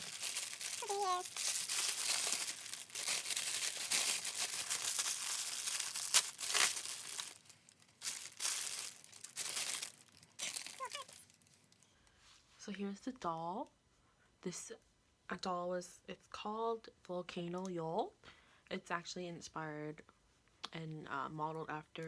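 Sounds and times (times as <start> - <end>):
packaging crinkling and rustling: 0.0 - 11.8.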